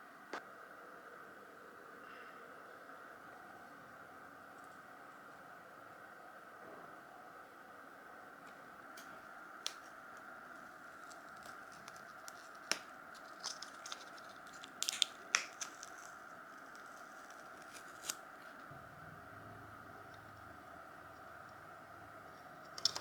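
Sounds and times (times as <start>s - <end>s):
steady background hum: 0.0s - 23.0s
clicks and scrapes of small objects: 11.0s - 18.7s, 22.6s - 23.0s.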